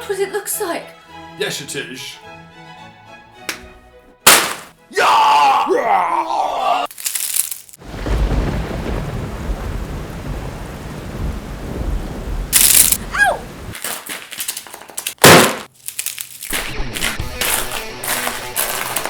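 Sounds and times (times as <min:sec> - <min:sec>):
loud sharp bang: 0:04.3 - 0:04.7, 0:15.2 - 0:15.7
rumbling rain-like hiss: 0:07.8 - 0:13.8.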